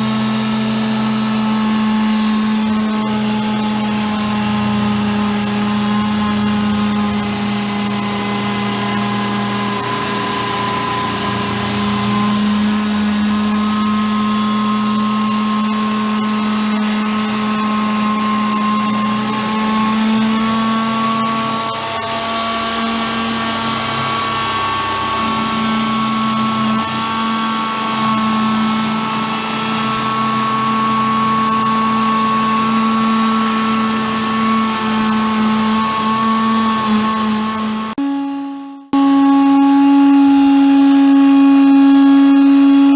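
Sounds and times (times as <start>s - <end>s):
machine drive humming: 0.0s - 20.8s, 22.8s - 42.9s.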